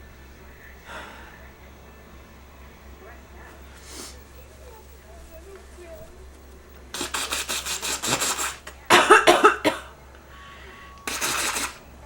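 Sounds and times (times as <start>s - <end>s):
person coughing: 8.9s - 9.9s.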